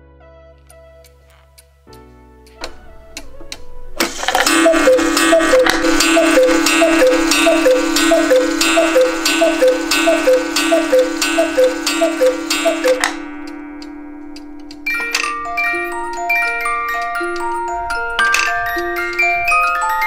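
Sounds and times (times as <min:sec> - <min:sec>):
cuckoo clock calling: 0:02.5 - 0:20.0
steady low drone: 0:02.6 - 0:17.6
faint ringing: 0:02.6 - 0:20.0.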